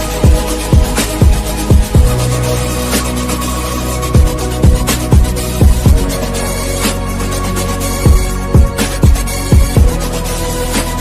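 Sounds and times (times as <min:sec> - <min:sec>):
deep kick drum hits: 0:00.2 - 0:02.2, 0:04.2 - 0:06.1, 0:08.1 - 0:10.0.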